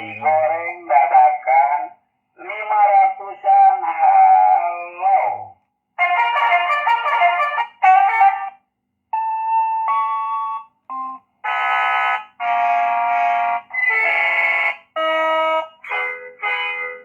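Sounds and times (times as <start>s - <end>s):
electronic horn playing a tune: 6.0s - 8.6s, 9.2s - 17.0s.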